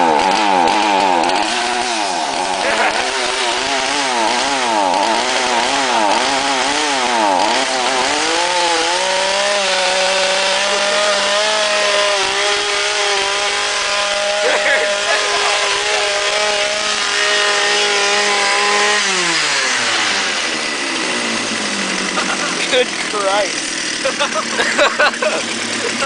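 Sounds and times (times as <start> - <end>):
chainsaw engine revving: 0.0 - 26.0.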